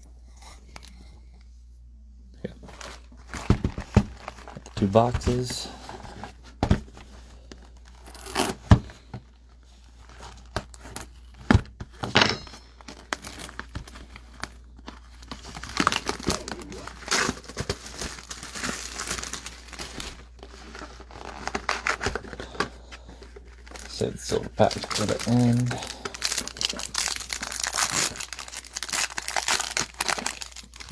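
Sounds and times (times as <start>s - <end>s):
plastic wrapping crinkling and tearing: 12.8s - 30.9s.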